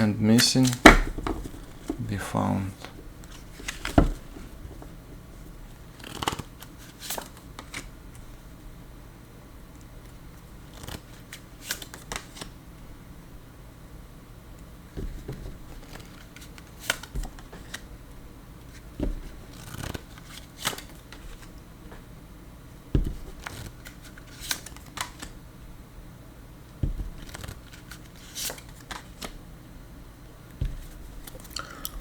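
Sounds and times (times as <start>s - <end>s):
cards being shuffled: 0.3s - 4.9s, 5.9s - 7.9s, 10.6s - 12.5s, 15.0s - 17.8s, 18.7s - 21.5s, 23.0s - 25.4s, 26.8s - 29.4s
soft thumps: 30.6s - 31.0s.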